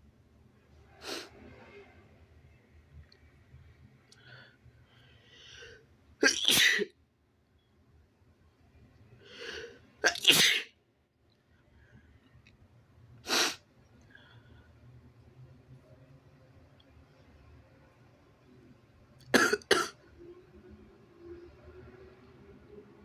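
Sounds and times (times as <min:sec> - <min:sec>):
person sneezing: 0:06.2 - 0:06.9, 0:10.0 - 0:10.7.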